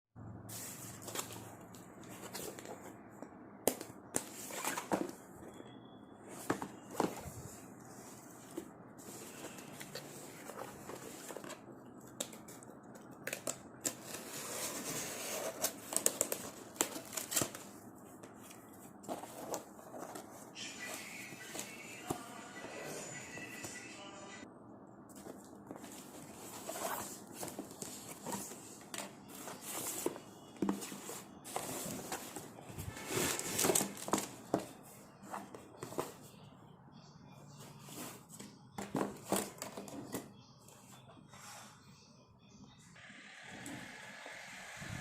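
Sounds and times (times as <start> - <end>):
plastic and cardboard crinkling: 6.3 - 22.3, 25.1 - 36.4.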